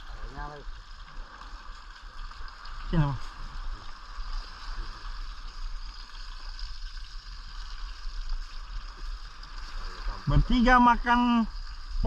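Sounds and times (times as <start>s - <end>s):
outdoor hiss: 0.0s - 12.0s.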